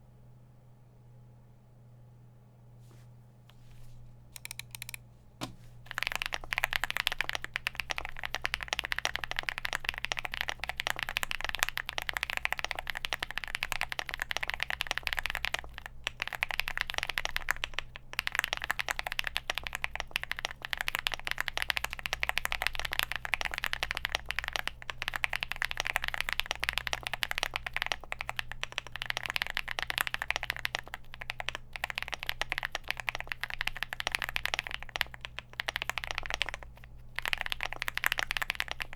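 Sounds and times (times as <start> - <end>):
mechanical keyboard key clacks: 4.4 - 5.0, 25.2 - 38.9.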